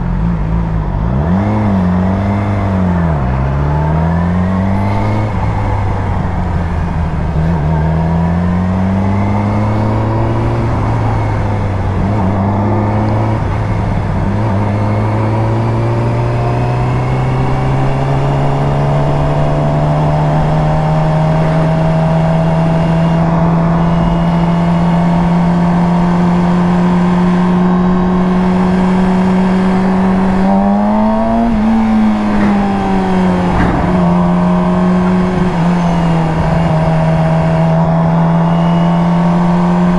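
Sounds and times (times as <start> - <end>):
motorcycle engine revving through gears: 0.0 - 39.9
wind noise: 26.8 - 38.7.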